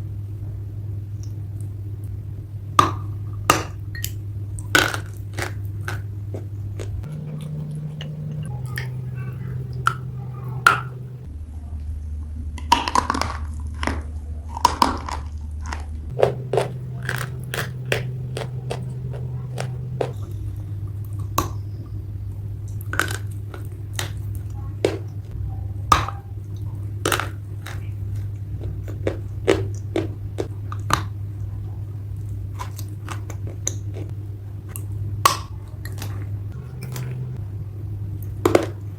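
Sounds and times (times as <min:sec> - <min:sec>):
low steady hum: 0:00.0 - 0:38.9
clay being chewed: 0:02.8 - 0:11.3, 0:14.8 - 0:22.0, 0:22.6 - 0:37.4.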